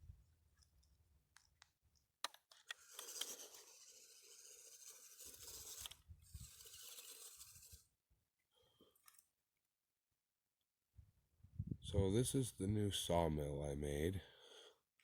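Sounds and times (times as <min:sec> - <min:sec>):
scratchy rustling and scraping: 0:02.8 - 0:07.9.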